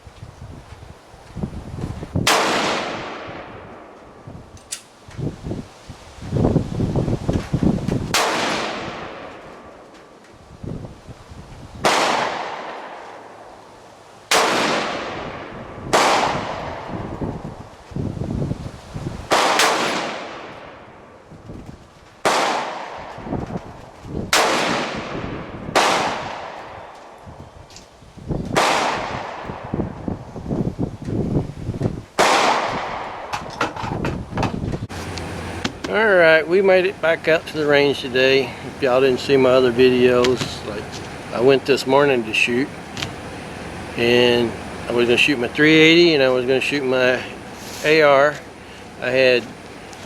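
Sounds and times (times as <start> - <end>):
rifle shots echoing: 2.2 - 4.0, 8.1 - 9.9, 11.8 - 13.4, 14.3 - 16.9, 19.3 - 20.9, 22.2 - 23.2, 24.3 - 27.0, 28.6 - 29.7, 32.2 - 33.3.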